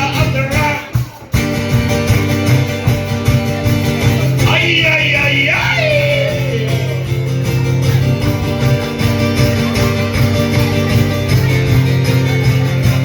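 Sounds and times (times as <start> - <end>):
bass line: 0.0 - 13.0
electric guitar playing: 0.0 - 13.0
person singing: 4.3 - 7.4.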